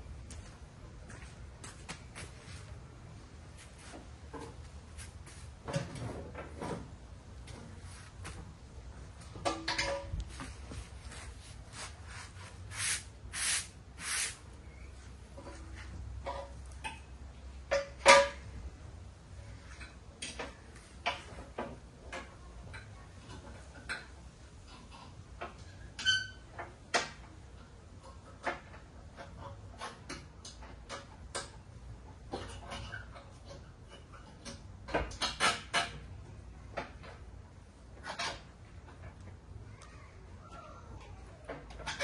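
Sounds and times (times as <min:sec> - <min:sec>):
short scraping bursts: 0:11.4 - 0:14.4.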